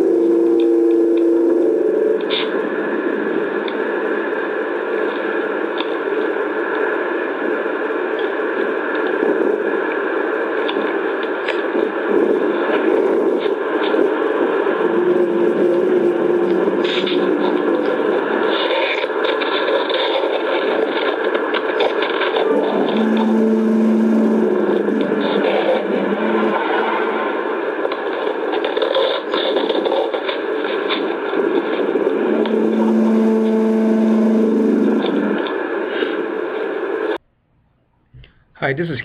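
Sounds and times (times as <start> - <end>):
low hum: 0.0 - 4.0, 12.3 - 18.3, 22.4 - 27.3, 32.0 - 35.9
static-like hissing roar: 0.0 - 37.0.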